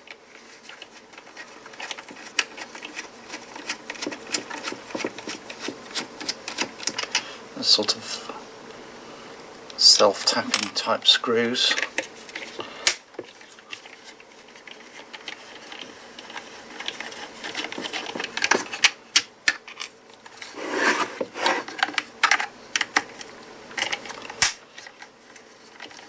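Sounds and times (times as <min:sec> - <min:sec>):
screwdriver rasping: 0:00.8 - 0:07.2.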